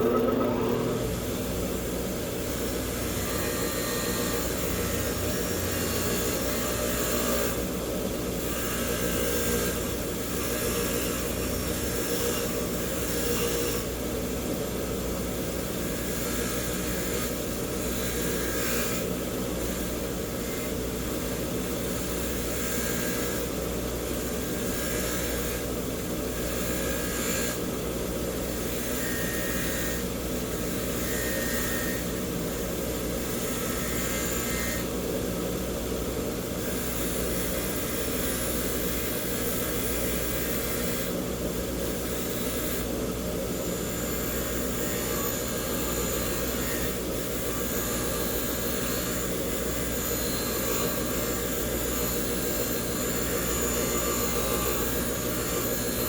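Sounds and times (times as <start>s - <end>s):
bench grinder motor running: 0.0s - 7.8s, 8.4s - 13.9s, 15.8s - 25.7s, 26.3s - 27.7s, 28.3s - 35.0s, 43.5s - 56.0s.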